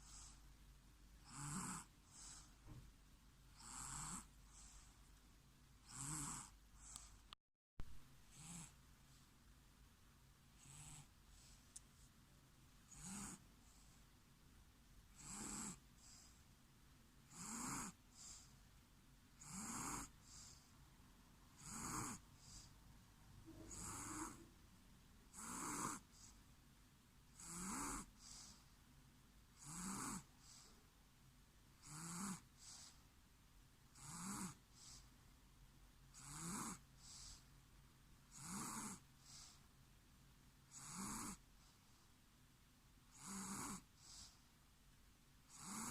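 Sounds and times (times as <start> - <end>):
breathy snoring: 0.0 - 0.4, 1.2 - 2.7, 3.5 - 5.0, 5.8 - 7.2, 8.3 - 8.8, 10.6 - 11.5, 12.9 - 14.0, 15.1 - 16.4, 17.3 - 18.5, 19.4 - 20.7, 21.6 - 22.7, 23.4 - 24.5, 25.3 - 26.4, 27.3 - 28.7, 29.5 - 30.8, 31.8 - 33.0, 33.9 - 35.1, 36.1 - 37.5, 38.3 - 39.6, 40.7 - 41.4, 43.1 - 44.4, 45.5 - 45.9.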